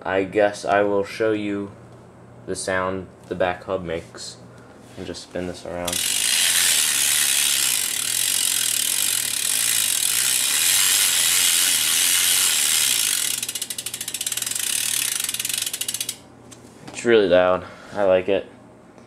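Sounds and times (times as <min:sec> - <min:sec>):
bike hub ratchet clicking: 0:05.9 - 0:16.3.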